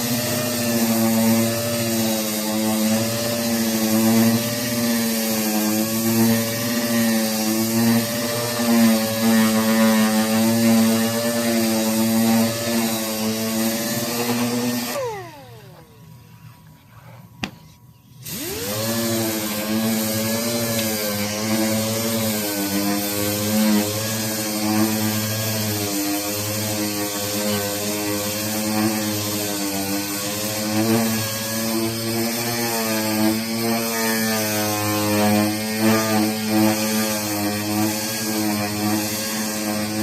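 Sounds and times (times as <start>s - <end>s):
power tool motor running: 0.0s - 16.2s, 18.2s - 40.0s.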